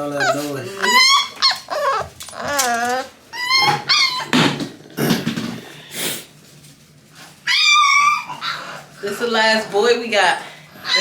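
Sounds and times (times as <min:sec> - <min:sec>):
puppy whining and yelping: 0:00.0 - 0:04.4, 0:07.4 - 0:09.0, 0:10.8 - 0:11.0.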